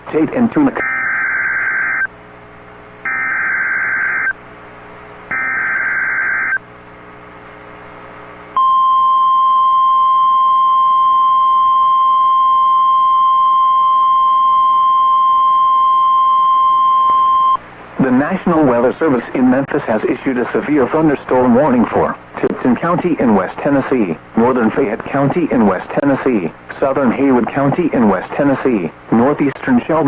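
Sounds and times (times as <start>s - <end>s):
steady warning alarm tone: 0.8s - 2.1s, 3.0s - 4.4s, 5.3s - 6.6s.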